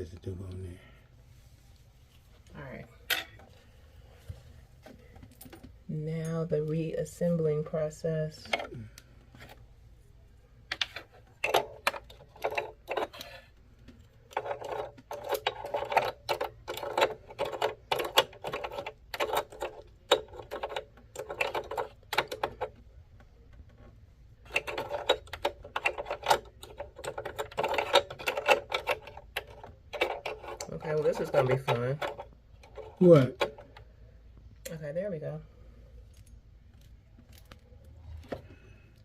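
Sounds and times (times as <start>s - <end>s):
sewing machine parts clicking: 24.4s - 33.7s.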